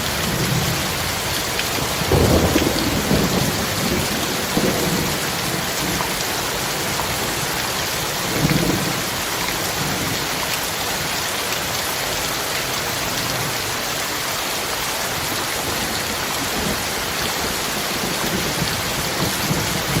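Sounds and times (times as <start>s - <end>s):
low rumble of thunder: 0.0s - 7.4s, 15.4s - 20.0s
heavy rain hissing: 0.0s - 20.0s.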